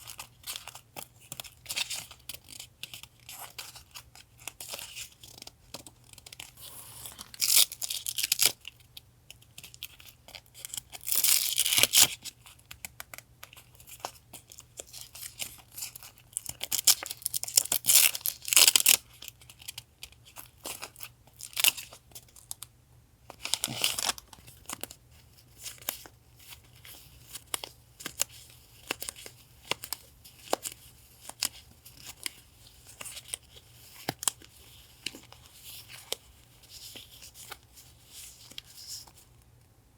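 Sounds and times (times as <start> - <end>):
paper crinkling and rustling: 0.0 - 8.8, 23.3 - 39.4
paper tearing: 6.6 - 8.5.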